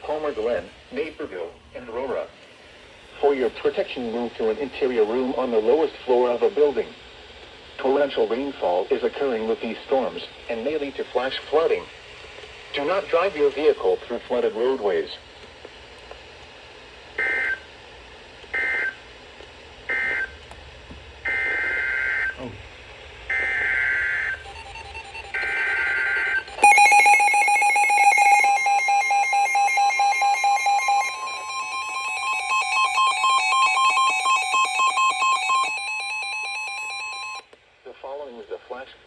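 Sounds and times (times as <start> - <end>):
pulsing two-tone attention signal: 23.3 - 37.4.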